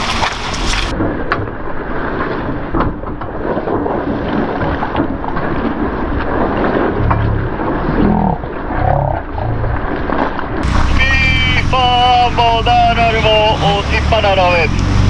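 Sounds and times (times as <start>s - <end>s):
truck engine labouring: 0.0s - 0.9s, 10.6s - 15.0s
water churning and splashing: 0.0s - 1.0s, 9.8s - 15.0s.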